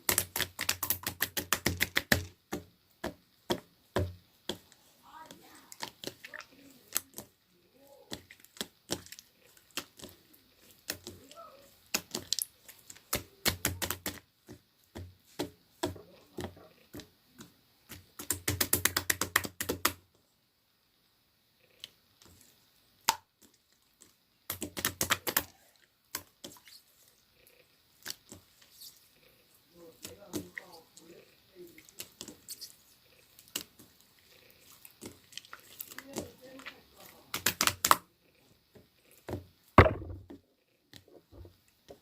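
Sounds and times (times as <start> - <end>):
rapid sharp clicks and taps: 0.0 - 4.7, 17.9 - 20.0, 24.5 - 25.5.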